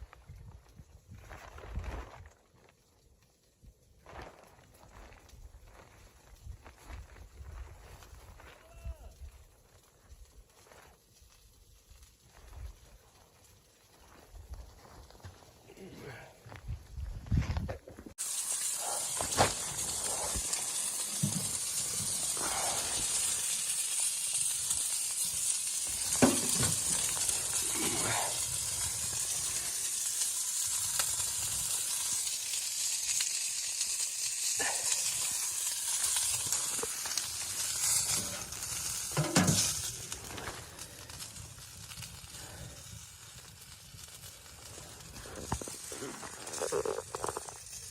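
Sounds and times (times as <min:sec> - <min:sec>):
steady high hiss: 0:18.2 - 0:31.1.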